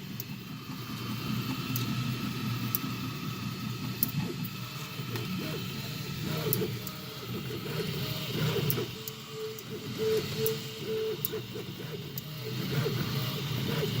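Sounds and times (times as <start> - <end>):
stepper motors whining: 0.6 - 14.0
sharp stepper motor clicks: 3.8 - 14.0.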